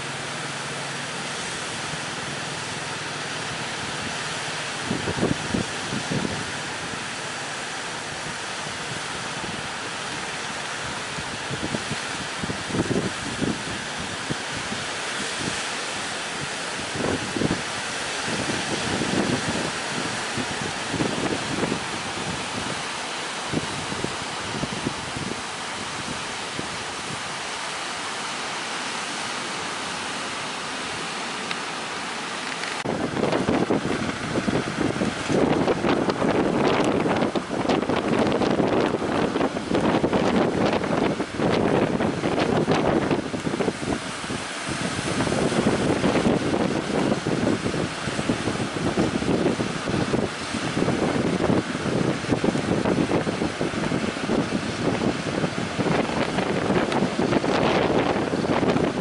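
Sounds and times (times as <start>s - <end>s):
strong wind: 0.0s - 59.0s
surf: 0.0s - 59.0s
wind buffeting microphone: 0.0s - 59.0s.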